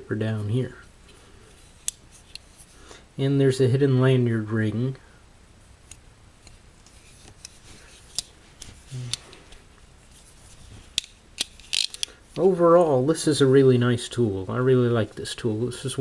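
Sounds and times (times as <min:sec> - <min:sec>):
multi-tool metal clicks: 0:11.0 - 0:12.2.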